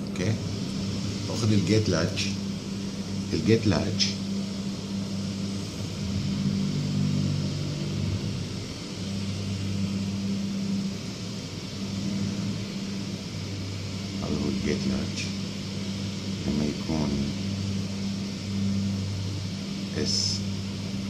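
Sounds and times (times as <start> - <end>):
air conditioning hum: 0.0 - 21.0.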